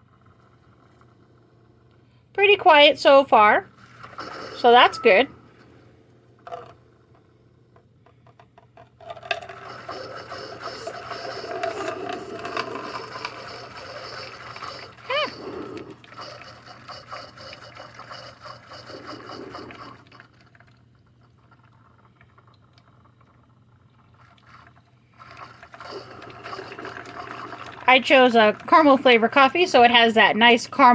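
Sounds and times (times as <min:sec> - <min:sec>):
coffee maker gurgle: 0:00.0 - 0:05.9, 0:09.0 - 0:30.9
coffee maker hiss and trickle: 0:09.2 - 0:30.9.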